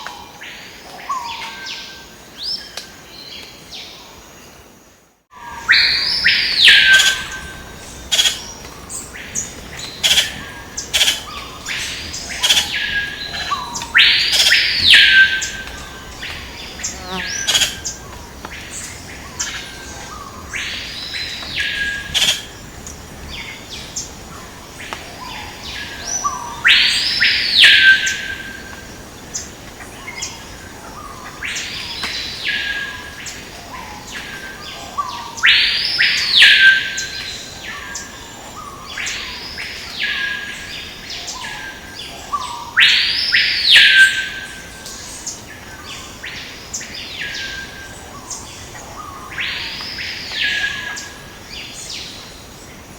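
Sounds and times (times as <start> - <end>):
bird whistled calls: 5.5 - 8.6, 10.0 - 15.6, 21.5 - 22.5.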